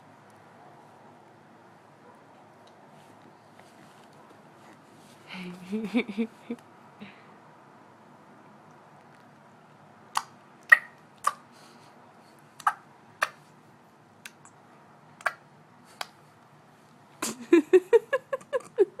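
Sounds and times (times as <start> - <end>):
child tongue clicks: 10.1 - 11.4.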